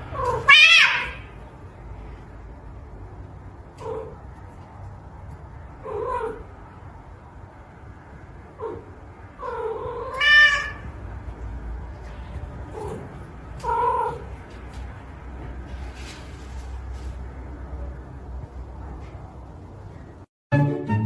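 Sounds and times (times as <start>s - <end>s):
cat meowing: 0.2s - 1.3s, 8.6s - 10.9s.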